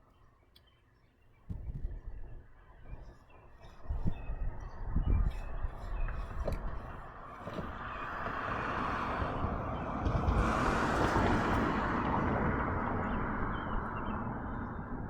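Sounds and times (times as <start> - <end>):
vehicle passing by: 7.8 - 15.0.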